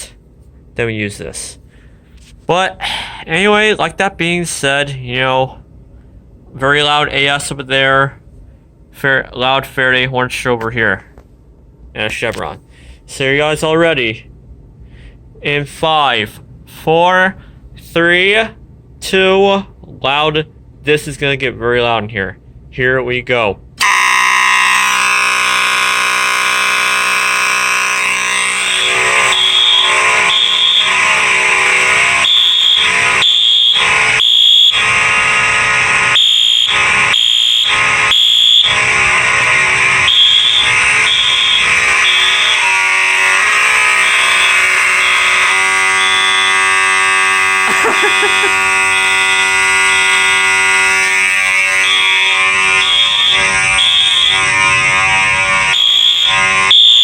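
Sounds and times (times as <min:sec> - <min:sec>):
beeping fire alarm horn: 0:23.8 - 0:57.0
buzzing fire alarm horn: 0:23.8 - 0:57.0.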